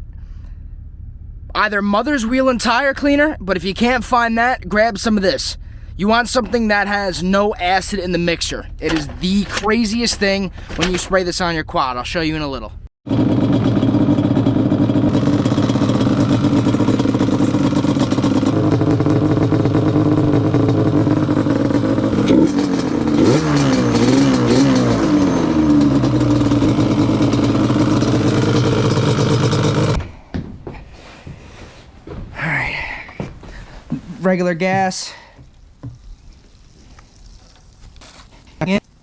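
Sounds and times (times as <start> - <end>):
vehicle engine running and revving: 13.1 - 30.0.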